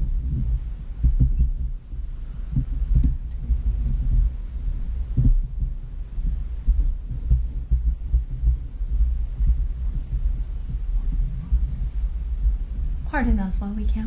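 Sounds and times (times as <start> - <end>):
low thumps of handling: 0.0 - 14.0
steady rumble: 0.0 - 14.0.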